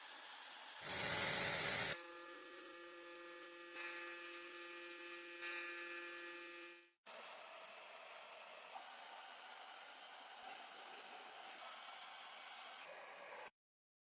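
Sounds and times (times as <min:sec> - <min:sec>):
hiss: 0:00.8 - 0:02.0.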